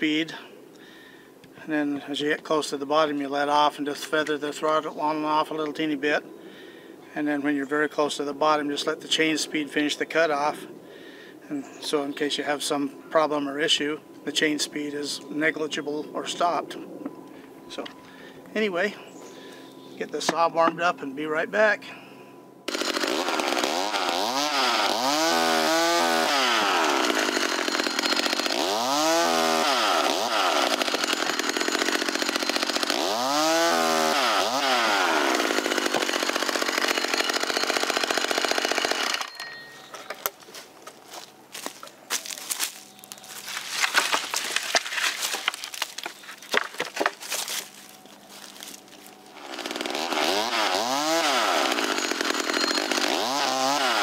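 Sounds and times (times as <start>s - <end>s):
chainsaw revving: 22.7s - 39.3s, 49.3s - 54.0s.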